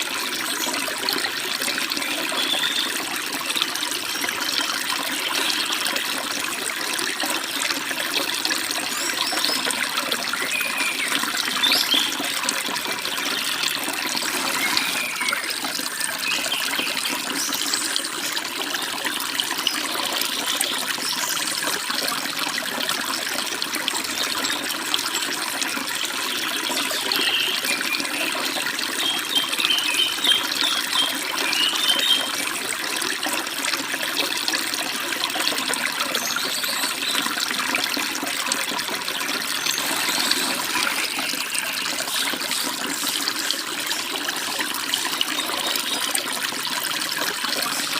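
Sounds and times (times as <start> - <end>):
stream babbling and rushing: 0.0 - 47.9
small birds chirping: 10.4 - 12.3, 29.0 - 32.4.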